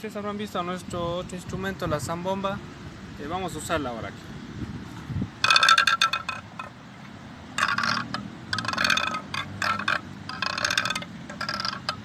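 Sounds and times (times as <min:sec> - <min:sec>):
rasping friction idiophone strokes: 0:04.8 - 0:12.0.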